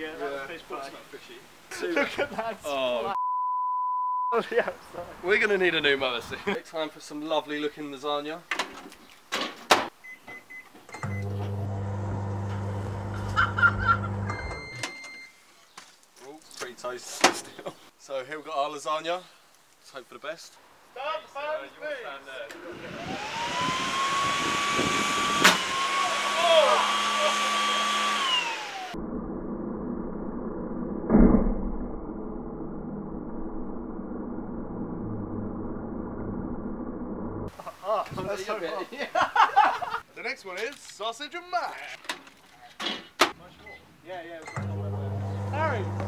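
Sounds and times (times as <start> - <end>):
long end beep: 3.2 - 4.4, 10.1 - 11.3, 14.3 - 15.4
microwave keypad beeps: 10.0 - 11.3, 14.2 - 15.4
microwave humming: 11.0 - 14.8, 44.5 - 46.0
muffled lawnmower running: 11.4 - 14.3, 23.1 - 28.7, 44.6 - 46.0
loud thump: 31.0 - 32.0.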